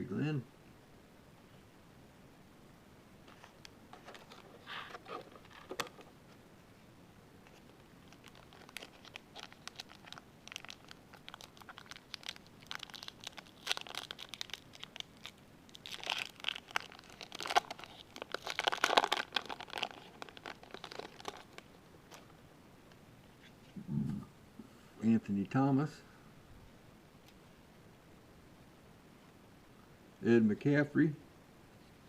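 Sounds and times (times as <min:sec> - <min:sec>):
cards and packaging rustling: 0:03.3 - 0:06.1, 0:07.4 - 0:22.3.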